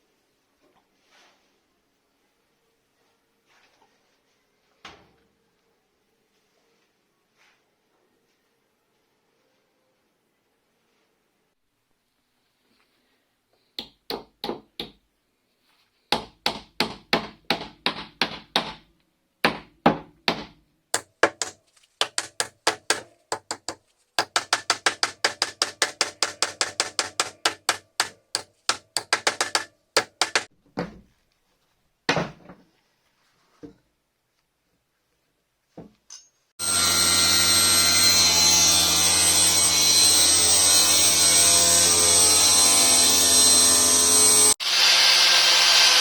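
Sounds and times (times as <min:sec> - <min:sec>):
hammer striking wood: 0:13.8 - 0:15.0, 0:16.1 - 0:30.5.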